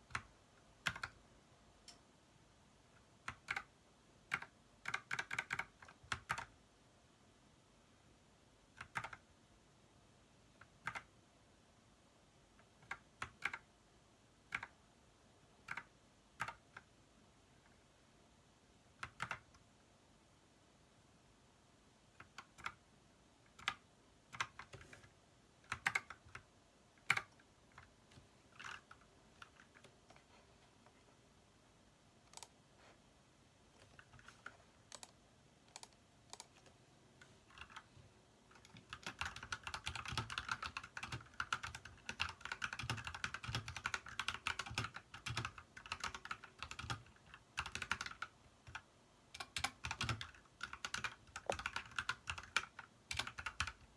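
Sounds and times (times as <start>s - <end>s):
typing on mechanical keyboard: 0.0s - 1.2s, 3.2s - 3.7s, 4.3s - 6.5s, 8.7s - 9.3s, 10.6s - 11.1s, 12.6s - 13.7s, 14.5s - 14.8s, 15.6s - 16.9s, 19.0s - 19.6s, 22.2s - 22.8s, 23.5s - 30.2s, 33.8s - 37.9s, 38.5s - 53.9s.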